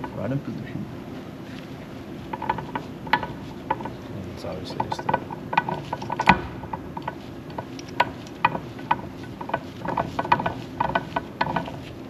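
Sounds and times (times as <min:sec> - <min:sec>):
gear teeth clicking: 0:02.2 - 0:12.0.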